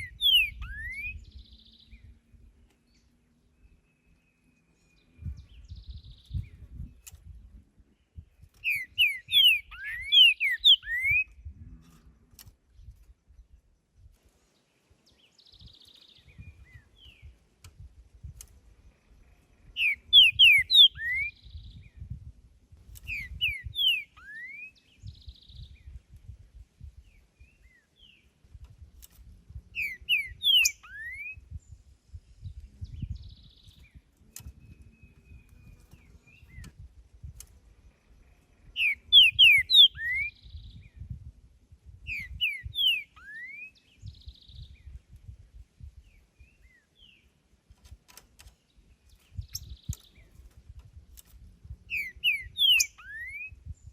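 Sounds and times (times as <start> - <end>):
bird singing whistled phrases: 0.0 - 2.1, 8.6 - 11.4, 19.8 - 22.0, 23.1 - 25.9, 29.8 - 31.5, 38.8 - 41.0, 42.1 - 44.9, 51.9 - 53.9.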